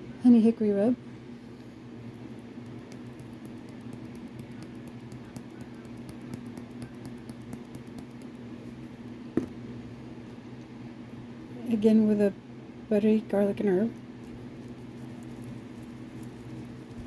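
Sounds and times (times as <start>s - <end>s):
steady low hum: 0.0s - 17.0s
seasoning shaken from container: 14.5s - 17.0s.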